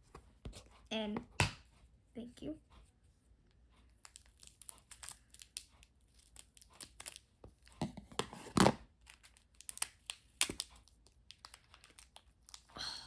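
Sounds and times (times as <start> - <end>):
packaging crinkling: 4.1 - 12.7.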